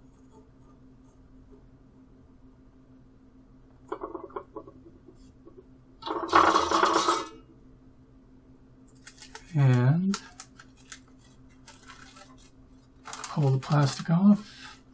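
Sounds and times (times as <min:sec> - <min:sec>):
plastic sheet crinkling: 0:09.0 - 0:14.8.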